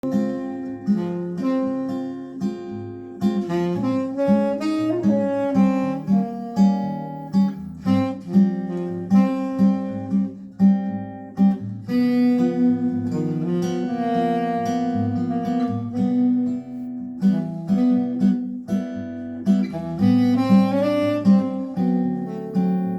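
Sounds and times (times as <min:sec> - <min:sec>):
acoustic guitar music through speakers: 0:00.0 - 0:22.9.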